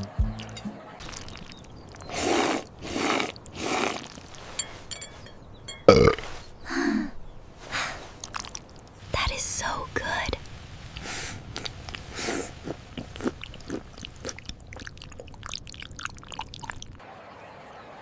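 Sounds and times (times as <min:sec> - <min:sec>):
girl burping: 0:05.9 - 0:06.2.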